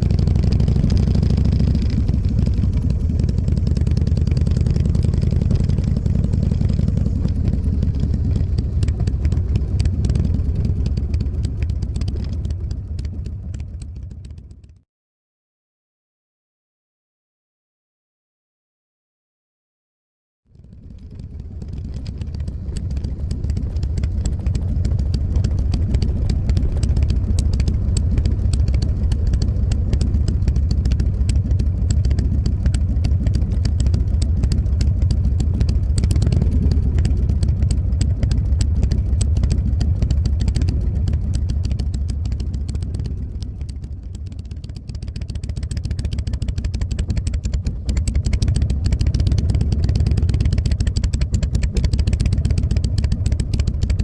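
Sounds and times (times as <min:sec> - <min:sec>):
motorcycle engine riding: 0:00.0 - 0:14.8, 0:20.5 - 0:54.0.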